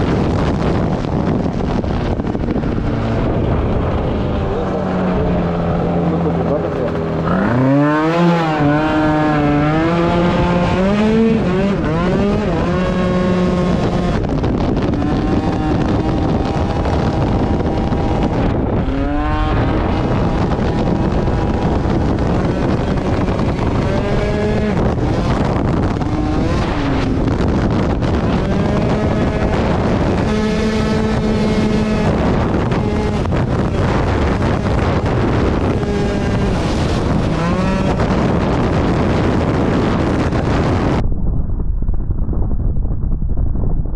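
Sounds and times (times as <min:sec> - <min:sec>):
wind noise on microphone: 0:00.0 - 0:43.9
scooter engine revving: 0:02.6 - 0:40.0.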